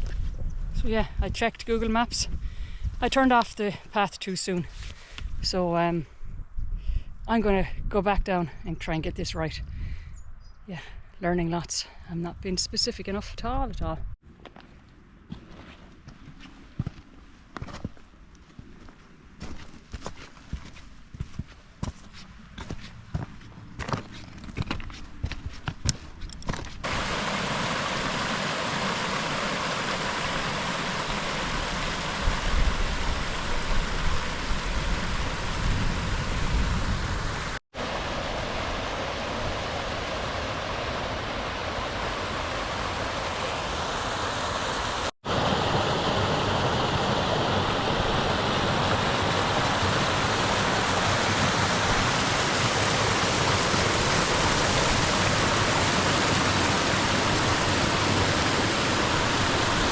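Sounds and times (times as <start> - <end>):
strong wind buffeting microphone: 0.0 - 3.1, 6.1 - 8.3, 30.1 - 59.9.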